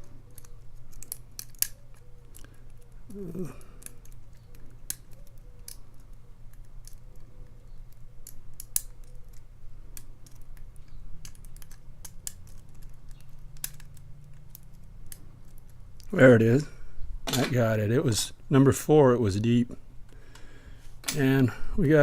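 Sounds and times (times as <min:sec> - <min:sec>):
lock pick clicks: 0:00.2 - 0:16.1.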